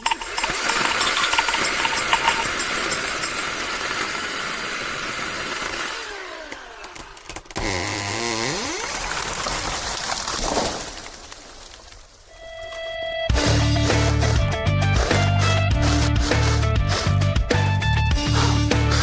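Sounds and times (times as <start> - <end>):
cordless chainsaw cutting wood: 2.4 - 9.4, 13.3 - 19.0.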